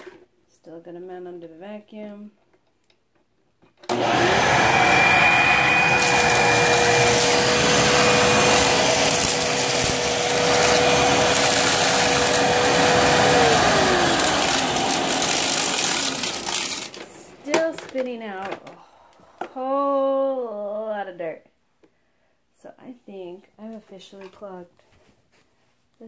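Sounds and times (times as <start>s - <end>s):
vacuum airflow rushing: 3.9s - 17.4s
vacuum cleaner whine: 3.9s - 17.5s.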